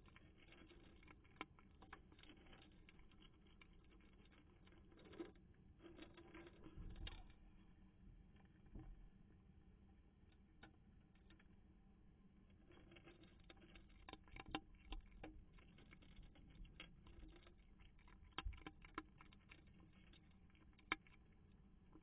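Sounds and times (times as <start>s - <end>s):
cat crunching food: 0.0s - 7.7s, 12.5s - 22.0s.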